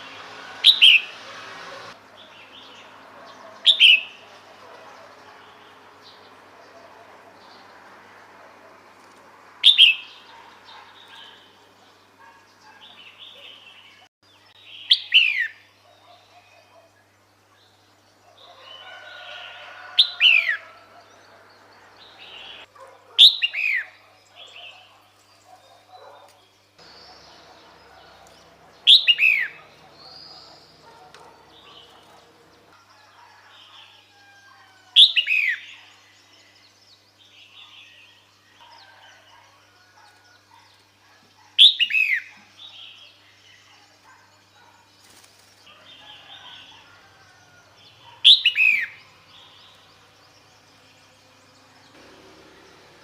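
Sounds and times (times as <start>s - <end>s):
bulbul calling: 0.0s - 5.2s, 26.8s - 32.8s, 48.0s - 49.6s.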